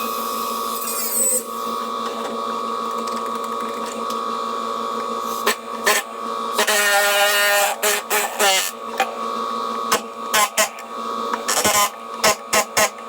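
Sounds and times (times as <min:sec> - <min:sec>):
power tool cutting metal: 0:00.0 - 0:01.9, 0:05.2 - 0:08.8, 0:09.9 - 0:10.8, 0:11.5 - 0:13.0.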